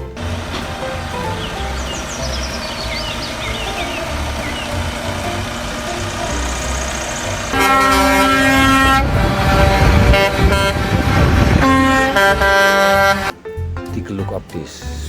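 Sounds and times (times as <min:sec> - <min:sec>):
low engine rumble: 0:00.0 - 0:14.7
multi-tone bus air horn: 0:07.5 - 0:13.3.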